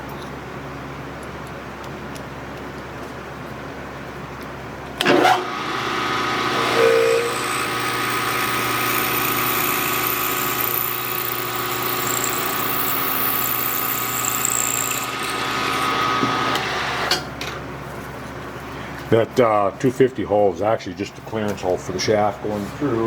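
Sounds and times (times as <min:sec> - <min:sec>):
milling spindle whine: 0:05.0 - 0:17.1.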